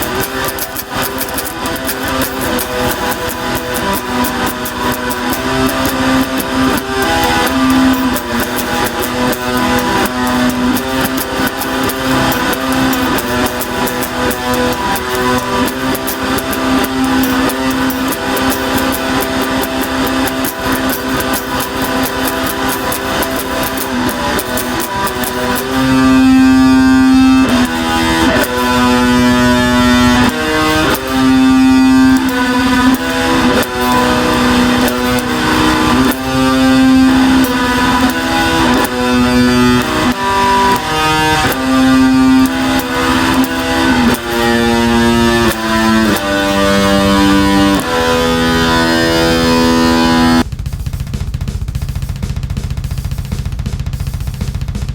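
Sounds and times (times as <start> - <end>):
distorted drone music: 0.0 - 54.9.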